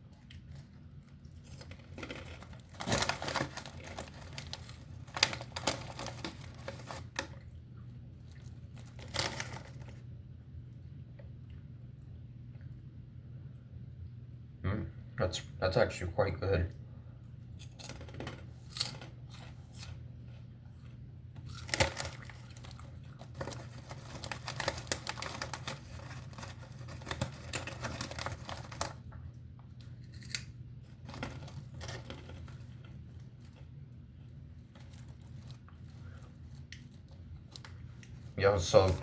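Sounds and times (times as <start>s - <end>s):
crunching snacks being chewed: 0.0s - 7.6s, 18.9s - 38.3s
steady low hum: 0.0s - 39.0s.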